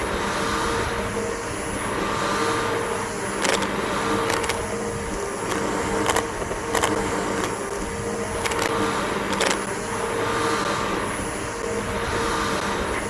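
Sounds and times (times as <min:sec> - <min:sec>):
sharp clicks: 0:03.4 - 0:09.7.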